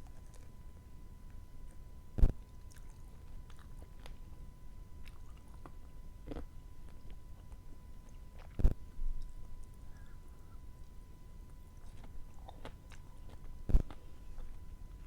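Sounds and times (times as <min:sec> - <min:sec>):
person chewing: 0:01.7 - 0:04.3, 0:05.0 - 0:15.0.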